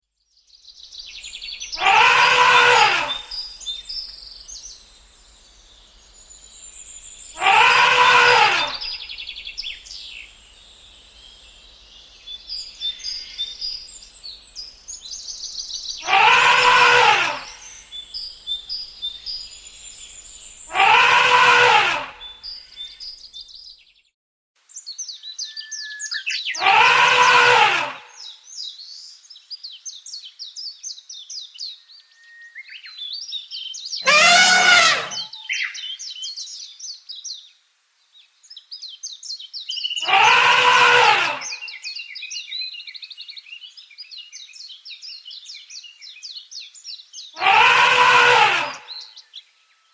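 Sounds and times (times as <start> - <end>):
birds chirping: 0.6 - 23.8, 33.8 - 36.0
elephant trumpeting: 1.8 - 3.3, 7.4 - 9.0, 16.0 - 17.8, 20.7 - 22.2, 26.6 - 28.0, 34.0 - 35.4, 40.0 - 41.6, 47.4 - 48.9.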